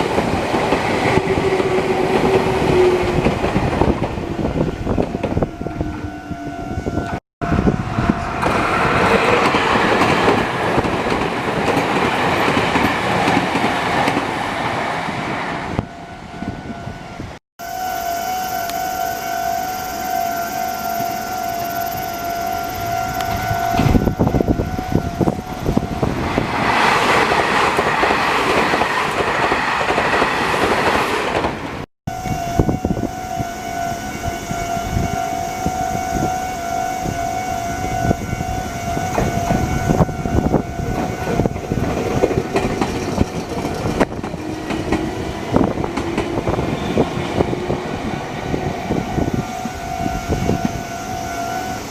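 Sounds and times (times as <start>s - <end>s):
train wheels clattering: 8.4s - 14.8s, 41.0s - 47.8s
level crossing warning bell: 17.6s - 26.4s.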